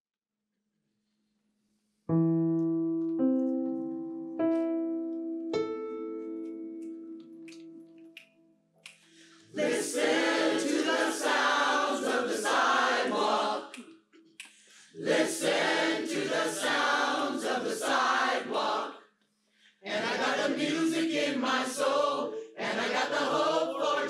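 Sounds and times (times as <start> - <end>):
piano chord: 2.1 - 8.2
choir singing: 9.5 - 13.9, 14.9 - 19.1, 19.8 - 24.0.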